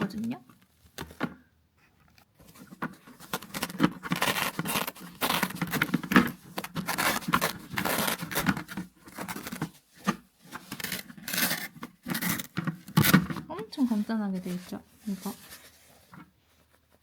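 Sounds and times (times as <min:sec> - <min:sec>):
fabric pillow cover rustling: 0:13.5 - 0:17.0.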